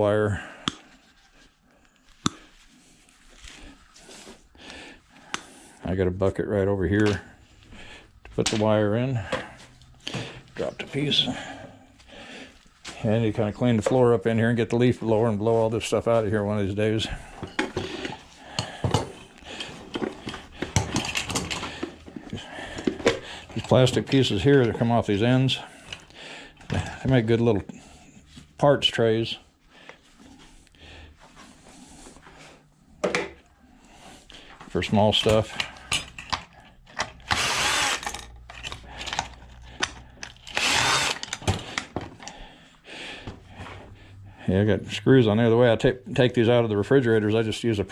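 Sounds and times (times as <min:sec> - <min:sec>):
small parts clinking and clicking: 0:19.9 - 0:22.0, 0:35.3 - 0:42.4
power drill burst: 0:37.2 - 0:38.3, 0:40.4 - 0:41.6.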